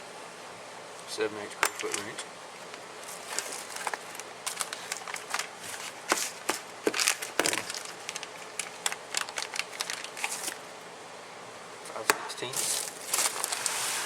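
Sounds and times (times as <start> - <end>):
plastic packaging crinkling: 1.7 - 10.7, 12.4 - 14.0.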